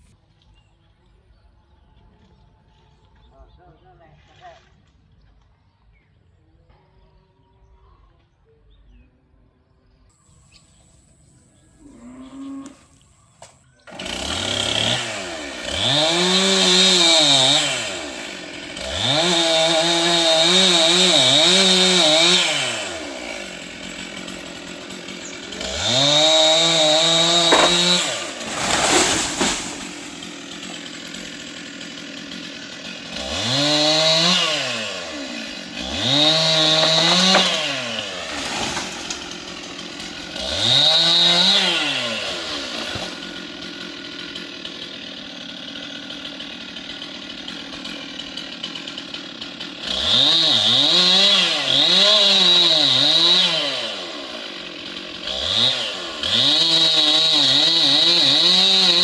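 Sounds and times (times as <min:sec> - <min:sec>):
chainsaw revving: 0:13.8 - 0:59.0.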